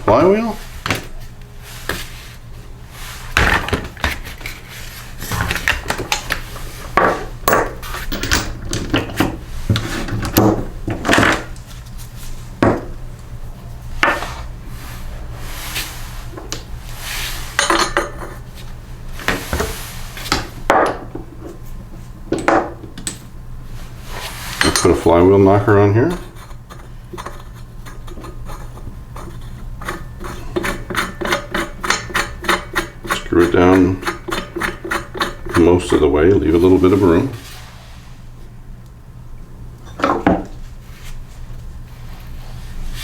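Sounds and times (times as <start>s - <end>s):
steady low hum: 0.0s - 43.0s
metal tools clinking on engine: 7.4s - 8.9s, 24.6s - 25.1s.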